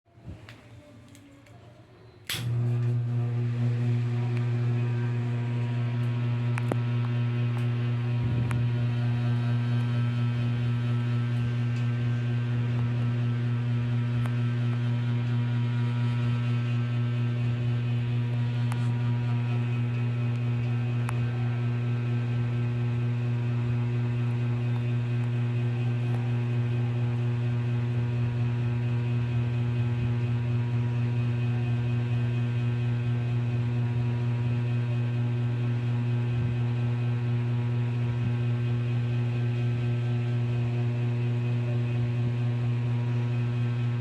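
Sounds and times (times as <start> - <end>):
ceiling fan motor humming: 0.1 - 44.0.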